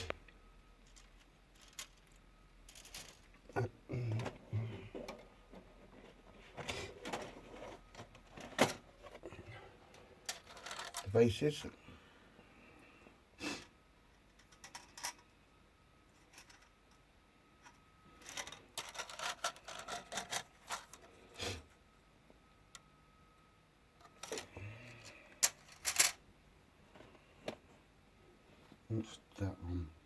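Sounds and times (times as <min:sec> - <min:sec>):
plastic parts clicking and clattering: 0:00.8 - 0:03.4, 0:04.1 - 0:09.2, 0:10.2 - 0:11.1, 0:14.2 - 0:15.2, 0:16.2 - 0:17.0, 0:17.6 - 0:21.2, 0:24.0 - 0:26.2.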